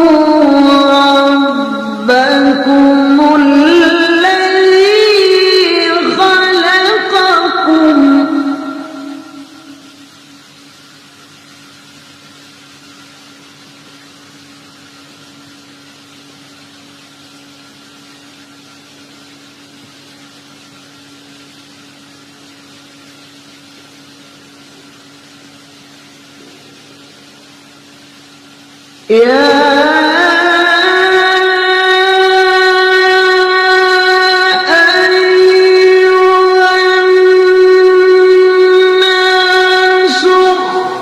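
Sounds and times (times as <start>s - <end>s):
person chanting melodic recitation: 0.0s - 9.8s, 29.1s - 41.0s
low tone drone: 37.3s - 41.0s.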